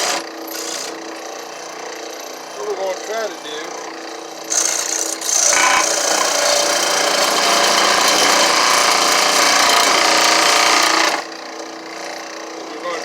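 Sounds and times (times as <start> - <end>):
saw rasping through wood: 0.0 - 1.0, 4.5 - 11.3.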